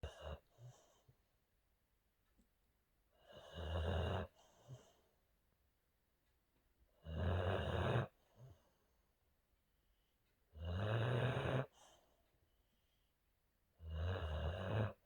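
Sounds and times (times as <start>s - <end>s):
dog snoring: 0.0s - 1.1s, 3.2s - 5.0s, 7.0s - 8.6s, 10.5s - 12.0s, 13.8s - 15.0s.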